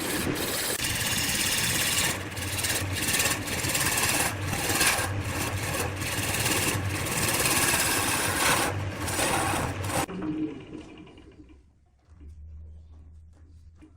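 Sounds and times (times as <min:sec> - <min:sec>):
lathe motor hum: 0:00.0 - 0:10.1.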